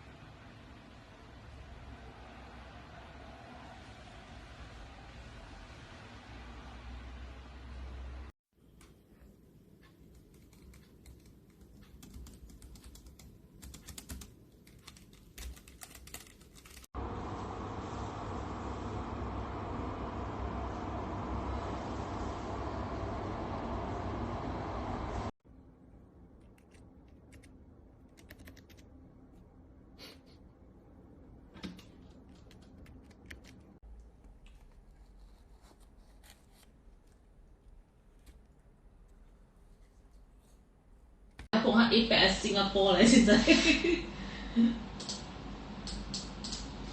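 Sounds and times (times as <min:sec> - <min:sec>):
mechanical keyboard typing: 0:10.1 - 0:16.8, 0:28.1 - 0:28.8
loud steady rumbling: 0:17.0 - 0:25.3.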